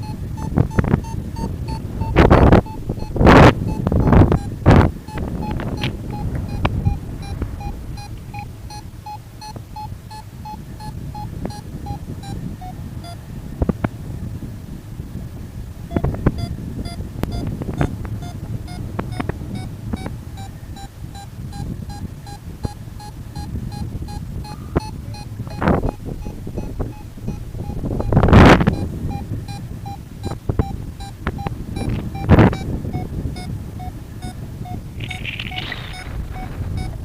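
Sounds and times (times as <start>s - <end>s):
rapid warning beeps: 0.0s - 13.3s, 15.8s - 37.0s
wind buffeting microphone: 0.0s - 37.0s.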